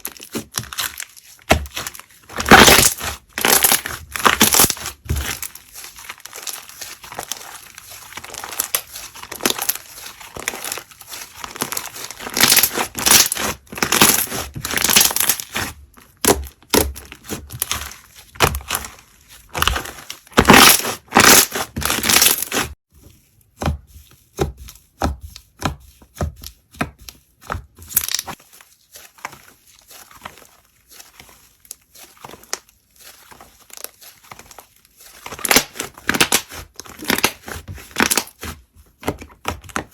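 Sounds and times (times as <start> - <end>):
slime crackling and popping: 0.0 - 18.9, 19.5 - 22.7, 27.9 - 28.4.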